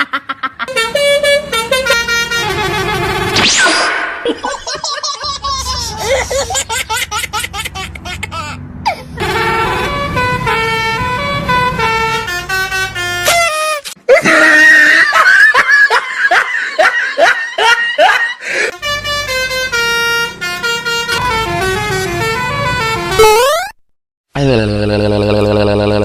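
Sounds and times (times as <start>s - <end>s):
laughter-like gliding sounds: 0.0s - 0.7s, 4.2s - 7.1s
bus multi-tone horn tune: 0.7s - 3.6s, 7.9s - 13.9s, 18.7s - 23.5s.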